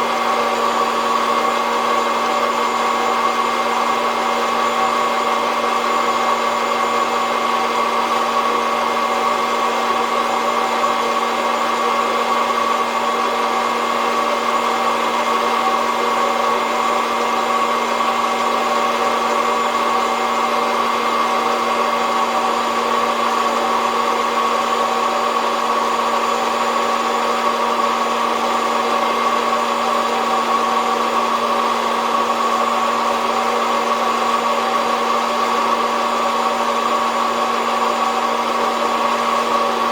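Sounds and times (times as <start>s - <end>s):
coffee roaster fan humming: 0.0s - 39.9s.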